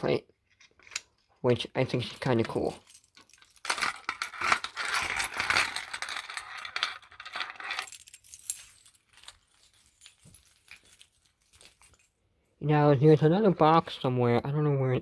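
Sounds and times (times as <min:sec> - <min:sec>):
small metal parts clinking: 0:00.5 - 0:12.2.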